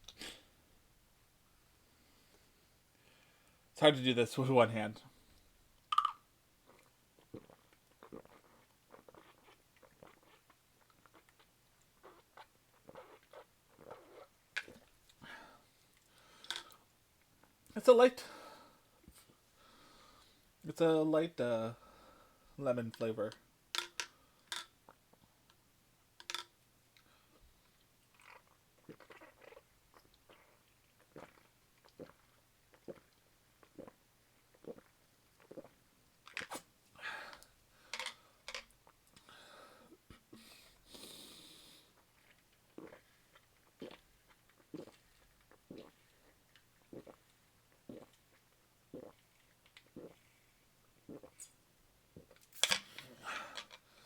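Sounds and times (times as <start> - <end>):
clicks and taps on glass bottle: 5.9 - 6.2
person gulping and swallowing: 5.9 - 15.4, 28.1 - 36.6, 42.0 - 50.4, 51.0 - 52.6.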